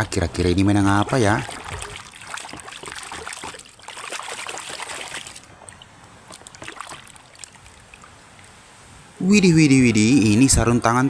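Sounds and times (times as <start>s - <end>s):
water trickling and splashing: 0.0s - 10.9s.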